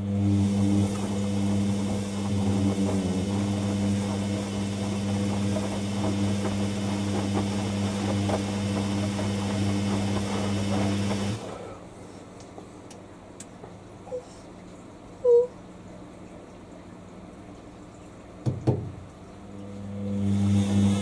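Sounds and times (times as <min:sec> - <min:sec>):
washing machine electrical hum: 0:00.0 - 0:21.0.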